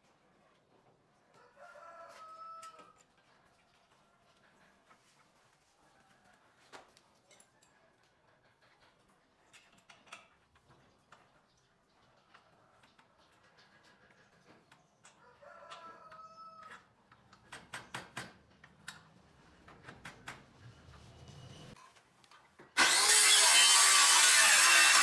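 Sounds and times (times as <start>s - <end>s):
rooster crowing: 1.5s - 3.0s, 15.3s - 16.7s.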